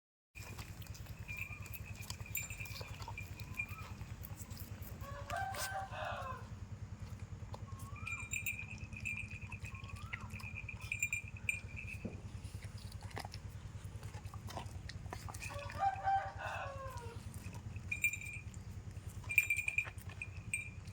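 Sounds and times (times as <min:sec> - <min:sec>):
low pulsing hum: 0:00.4 - 0:20.9
rooster crowing: 0:05.0 - 0:06.6, 0:15.4 - 0:17.2.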